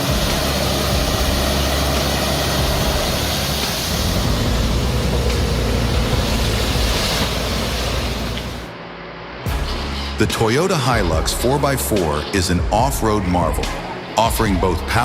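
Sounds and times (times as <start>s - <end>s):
heavy machine engine running: 0.0s - 8.7s
rushing and splashing water: 0.0s - 8.7s.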